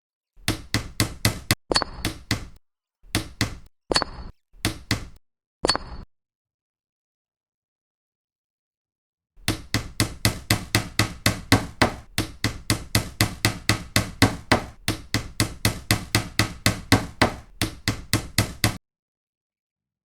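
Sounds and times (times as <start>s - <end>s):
hand tool tapping a hard surface: 0.4s - 3.7s, 4.6s - 5.2s, 9.4s - 18.8s.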